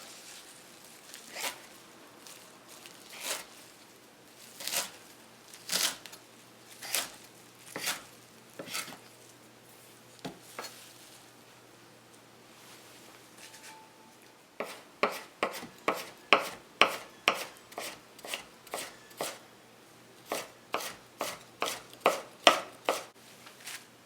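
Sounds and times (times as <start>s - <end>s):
knife chopping on cutting board: 7.8s - 8.0s, 8.6s - 9.0s, 14.6s - 19.4s, 20.3s - 23.1s.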